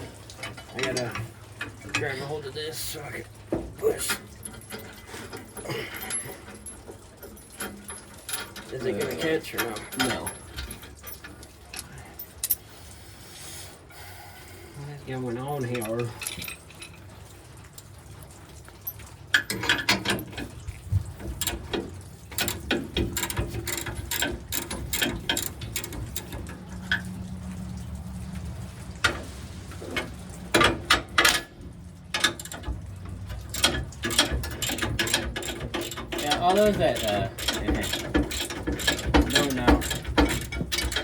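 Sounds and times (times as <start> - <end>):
metallic tool clicks and clanks: 22.3 - 27.1, 33.4 - 41.0.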